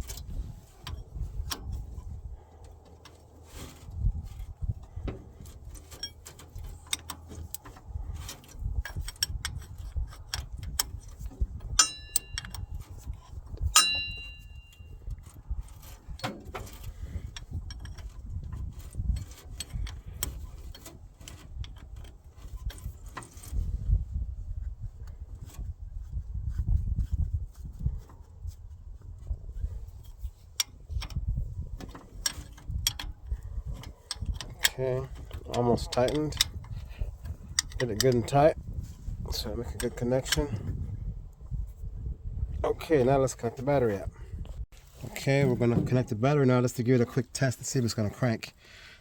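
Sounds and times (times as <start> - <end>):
wrench metallic clicks and knocks: 4.8 - 23.5, 31.8 - 38.4
metal on metal clinks: 11.6 - 12.7, 13.7 - 15.0.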